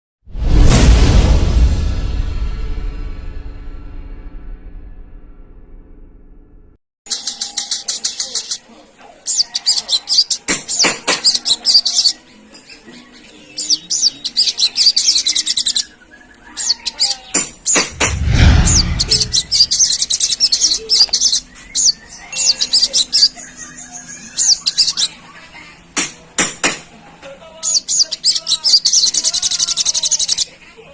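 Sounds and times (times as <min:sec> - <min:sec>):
sunbird chattering: 0:07.1 - 0:12.2, 0:13.6 - 0:17.8, 0:19.3 - 0:25.2, 0:27.6 - 0:30.5
loud rustling thump: 0:17.8 - 0:19.9.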